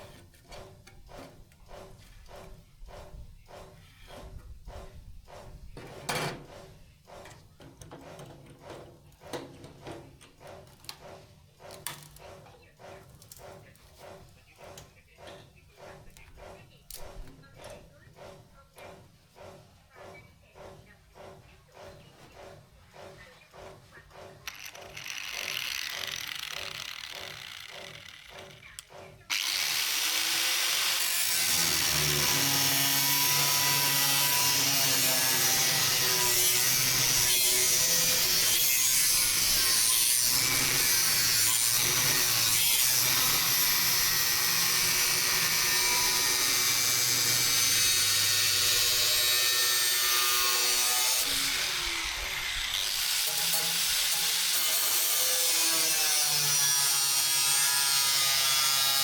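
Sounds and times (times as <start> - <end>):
power tool grinding steel: 19.4 - 59.0.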